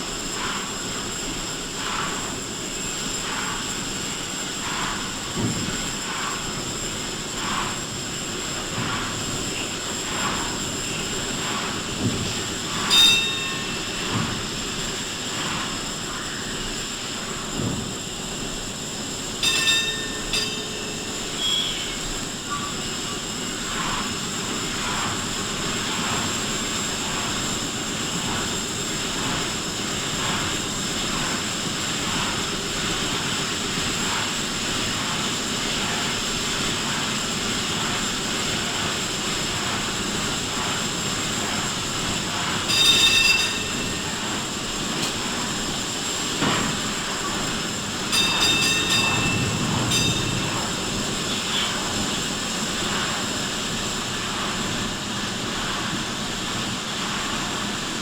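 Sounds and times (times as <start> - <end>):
ship machinery whining: 3.9 - 55.7
high-pitched squeals: 12.8 - 14.2, 42.7 - 44.8.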